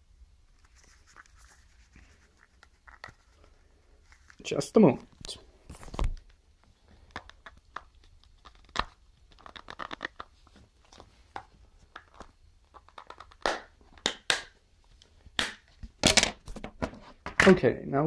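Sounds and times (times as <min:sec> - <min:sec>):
fingers scraping plastic cover: 0:07.0 - 0:10.3.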